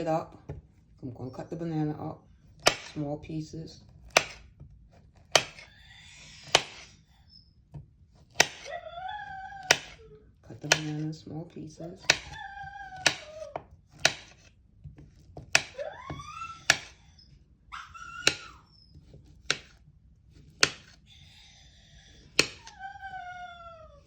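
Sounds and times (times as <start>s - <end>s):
dog whining: 5.5s - 7.7s, 8.4s - 11.1s, 11.8s - 13.9s, 15.6s - 19.4s, 21.0s - 24.0s
knife tapping on cutting board: 9.7s - 10.0s, 10.7s - 11.0s, 12.1s - 12.4s, 15.4s - 15.8s.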